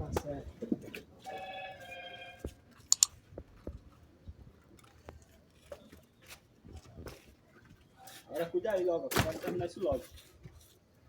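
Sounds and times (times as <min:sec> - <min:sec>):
wooden sticks clicking: 0:02.9 - 0:03.1.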